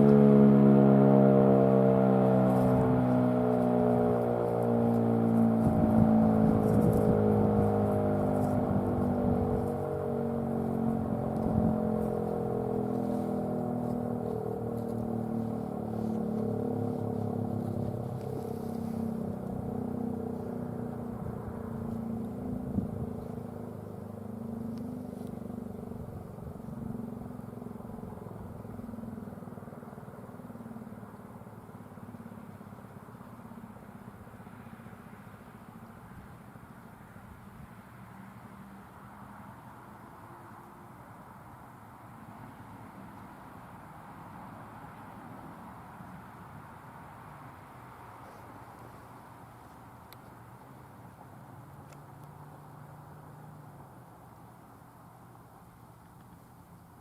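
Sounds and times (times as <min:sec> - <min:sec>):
warning siren winding down: 0:00.0 - 0:23.3.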